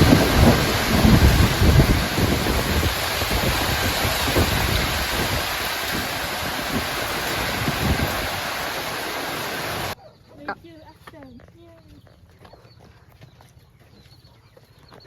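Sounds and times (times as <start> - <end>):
heavy rain pouring: 0.0 - 10.0
low rumbling: 0.0 - 10.0.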